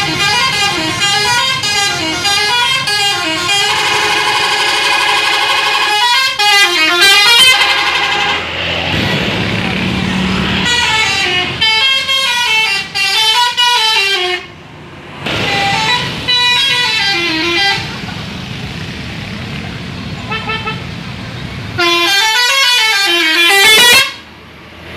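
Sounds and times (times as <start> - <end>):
bus horn playing multi-note tune: 0.0 - 8.6, 10.6 - 14.6, 15.3 - 18.0, 20.2 - 20.9, 21.8 - 24.3
steady engine rumble: 0.0 - 24.9.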